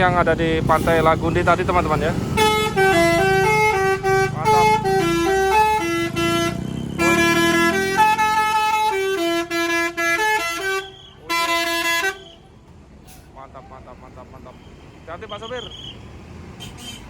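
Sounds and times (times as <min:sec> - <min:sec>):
bus engine running: 0:00.0 - 0:17.0
bus horn playing a melody: 0:02.3 - 0:12.6.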